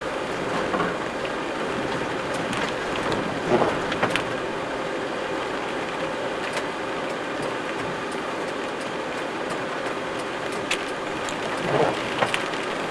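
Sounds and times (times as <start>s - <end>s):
steady rain falling: 0.0s - 12.9s
sharp raindrop ticks: 0.7s - 4.3s, 5.4s - 12.9s.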